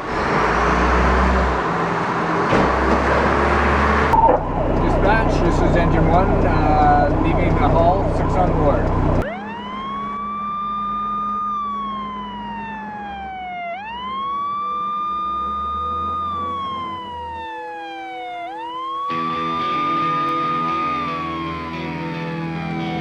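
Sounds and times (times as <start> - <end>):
fire engine siren wailing: 0.0 - 23.0
music: 15.4 - 23.0.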